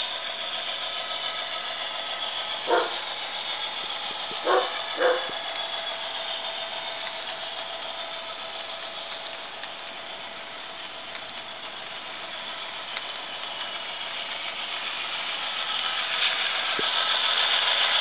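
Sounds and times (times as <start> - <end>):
model train diesel engine sound: 0.0 - 18.0
dog barking: 2.7 - 3.0, 4.4 - 5.3.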